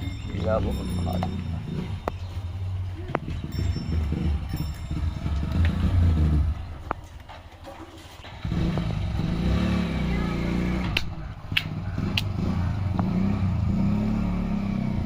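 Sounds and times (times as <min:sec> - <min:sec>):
engine running: 0:00.0 - 0:15.0.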